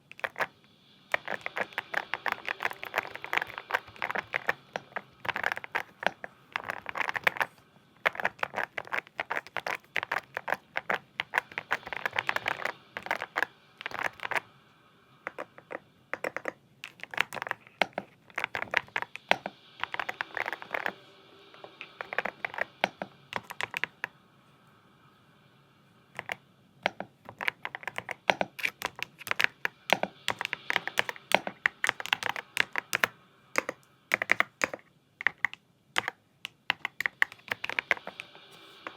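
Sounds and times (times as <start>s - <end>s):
mechanical keyboard typing: 0.0s - 14.4s, 15.3s - 21.0s, 21.6s - 24.1s, 26.2s - 38.9s.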